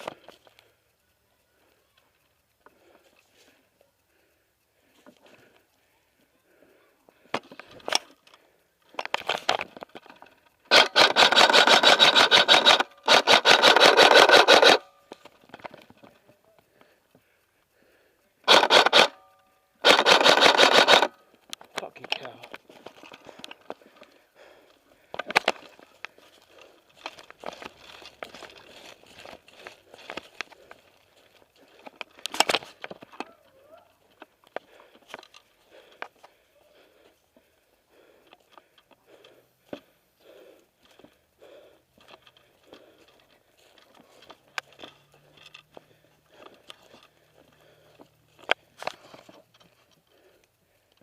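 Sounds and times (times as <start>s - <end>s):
quiet clicks: 0.0s - 37.6s
airsoft rifle firing bursts: 10.7s - 14.9s, 18.5s - 19.2s, 19.8s - 21.2s.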